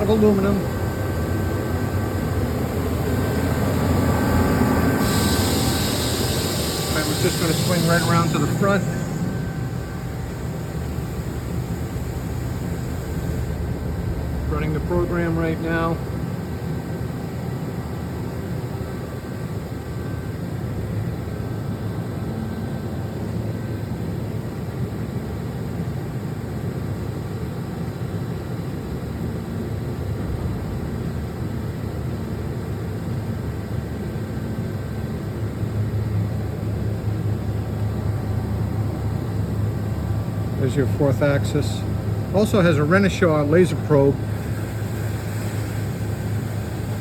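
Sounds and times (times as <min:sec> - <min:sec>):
low hum: 0:00.0 - 0:17.9
machine hum: 0:00.0 - 0:19.2
faint steady tones: 0:05.4 - 0:16.1.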